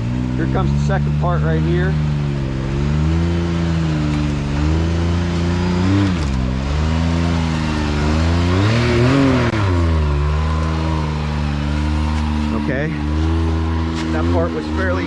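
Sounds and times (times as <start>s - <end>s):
utv engine revving: 0.0s - 15.0s.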